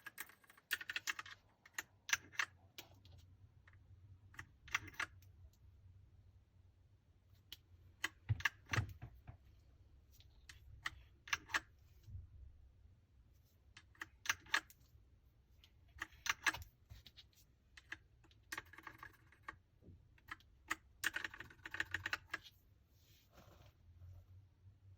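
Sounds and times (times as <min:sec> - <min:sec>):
mechanical keyboard typing: 0:00.0 - 0:03.0, 0:04.4 - 0:05.3, 0:13.8 - 0:14.7, 0:15.9 - 0:16.7, 0:17.8 - 0:22.5.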